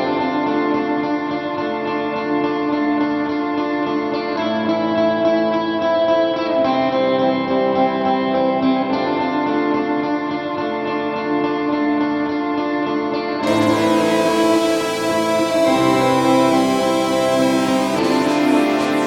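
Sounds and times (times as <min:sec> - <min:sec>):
plucked guitar music: 0:13.4 - 0:19.0.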